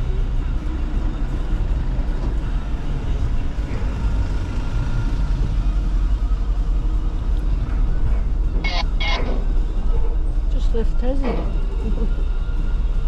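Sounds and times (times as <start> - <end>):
vehicle low rumble: 0.0 - 13.0
faint high tone: 8.7 - 9.2.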